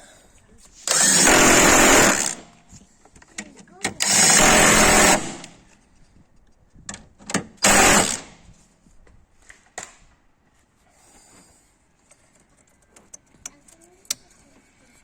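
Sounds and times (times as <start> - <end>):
power tool bursts: 0.8 - 2.6, 4.0 - 5.6, 7.6 - 8.4.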